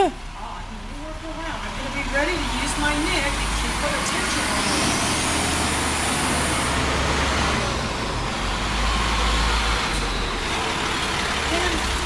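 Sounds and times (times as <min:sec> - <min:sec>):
road traffic rumble: 0:00.0 - 0:12.0.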